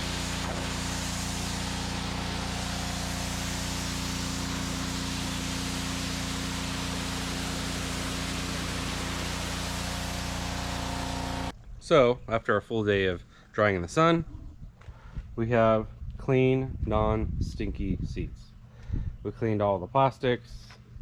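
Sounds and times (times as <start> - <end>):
pressure washer motor humming: 0.0 - 11.5
water spray hissing: 0.0 - 11.5.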